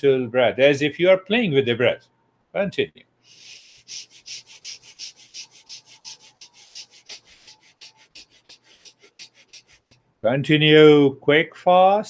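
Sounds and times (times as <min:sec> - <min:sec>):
quick breaths through nostrils: 0:03.2 - 0:10.1.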